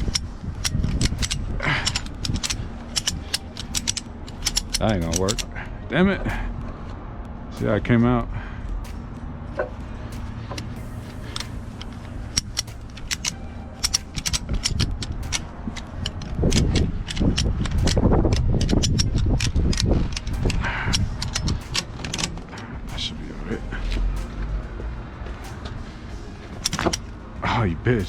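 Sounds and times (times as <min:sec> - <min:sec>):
ratchet strap clicking: 0:00.0 - 0:05.6, 0:08.8 - 0:23.2, 0:25.3 - 0:27.2
low rumble: 0:00.0 - 0:28.0.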